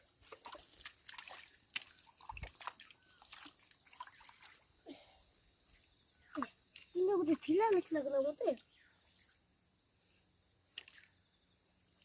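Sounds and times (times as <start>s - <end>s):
shallow water splashing: 0.2s - 4.8s.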